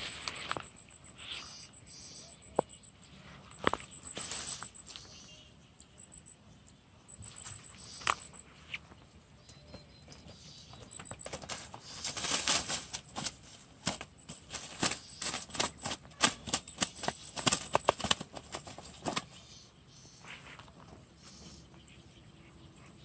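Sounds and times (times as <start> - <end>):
rapid clicks and rattles: 10.1 - 19.4.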